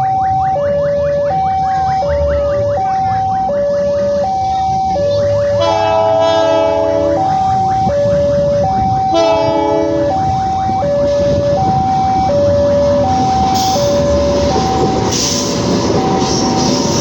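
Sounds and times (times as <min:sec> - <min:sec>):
two-tone warning alarm: 0:00.0 - 0:17.0
locomotive air horn chord: 0:05.2 - 0:07.9, 0:09.0 - 0:10.4.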